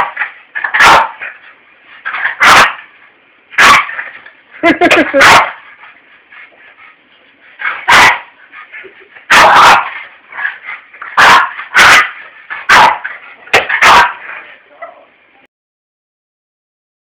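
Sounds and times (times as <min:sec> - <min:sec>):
dog barking: 0:00.0 - 0:01.4, 0:02.2 - 0:02.8, 0:03.6 - 0:04.0, 0:04.8 - 0:05.6, 0:07.6 - 0:08.4, 0:09.3 - 0:15.1
quiet dog sounds: 0:04.6 - 0:15.5.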